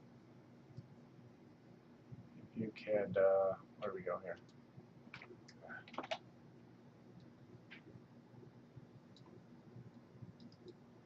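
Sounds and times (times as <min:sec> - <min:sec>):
faint computer mouse clicks: 0:09.1 - 0:10.8.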